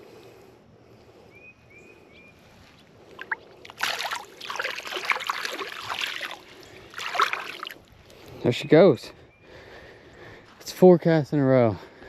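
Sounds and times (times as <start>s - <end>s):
water splashing and sloshing: 3.1s - 7.9s.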